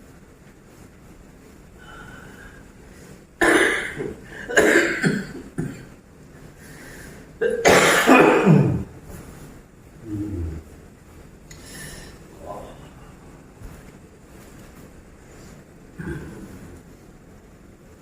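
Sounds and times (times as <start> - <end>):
person coughing: 3.4 - 5.9, 7.4 - 8.9, 16.0 - 16.6.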